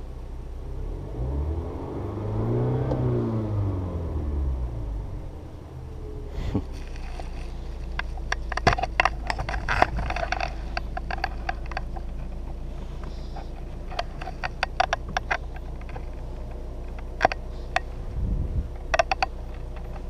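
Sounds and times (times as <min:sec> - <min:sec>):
car engine idling: 0:03.6 - 0:20.0
irregular clicks and taps: 0:07.8 - 0:17.9, 0:18.8 - 0:20.0.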